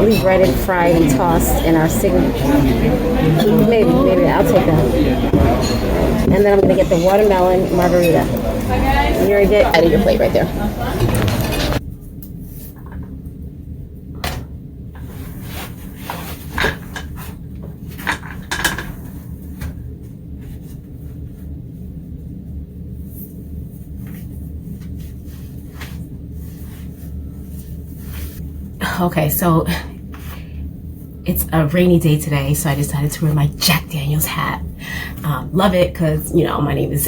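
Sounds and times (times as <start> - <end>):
dishes and cutlery clinking: 0.0 - 11.8
steady low hum: 0.0 - 16.0, 19.2 - 37.0.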